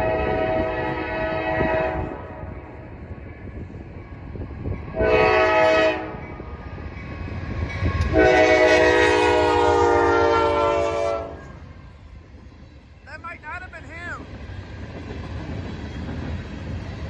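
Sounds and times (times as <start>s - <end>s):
locomotive air horn: 0.0s - 2.5s, 4.9s - 6.3s, 8.0s - 11.6s
train rumbling: 0.0s - 17.0s.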